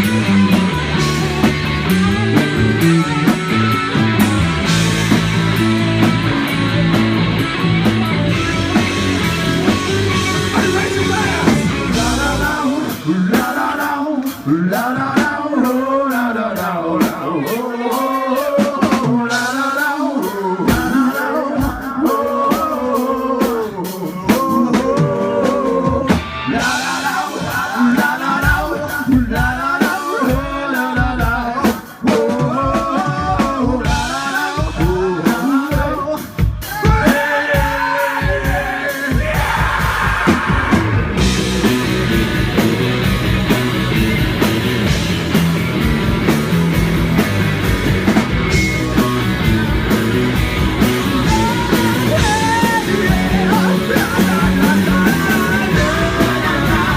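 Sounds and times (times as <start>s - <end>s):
live rock band: 0.0s - 56.9s
person singing: 9.6s - 41.4s, 50.8s - 56.9s.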